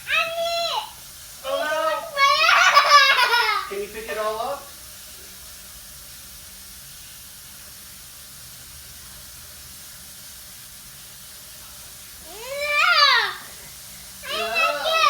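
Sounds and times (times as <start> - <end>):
steady background hiss: 0.0 - 6.3, 10.8 - 15.0
person speaking: 14.2 - 15.0.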